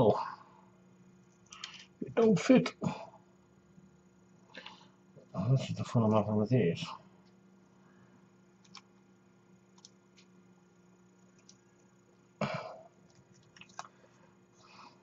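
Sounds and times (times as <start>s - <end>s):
faint steady hum: 0.0s - 15.0s
person coughing: 12.4s - 12.9s.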